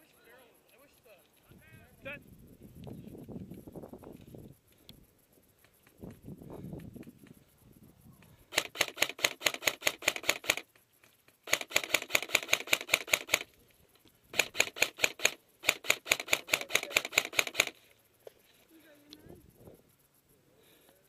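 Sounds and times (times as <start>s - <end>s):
rapid mechanical clicking: 8.2s - 18.2s.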